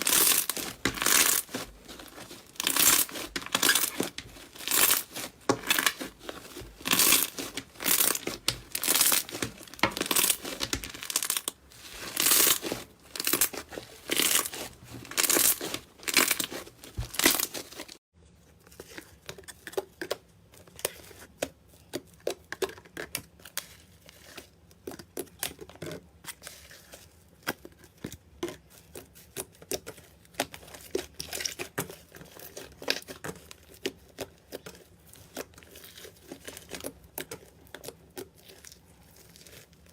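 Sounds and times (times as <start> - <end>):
slime squishing by hand: 0.0 - 18.0.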